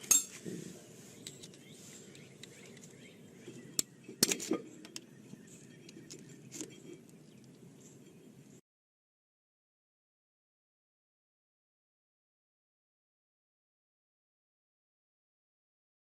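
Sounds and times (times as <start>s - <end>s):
metal tool clicks and clinks: 0.0s - 0.4s.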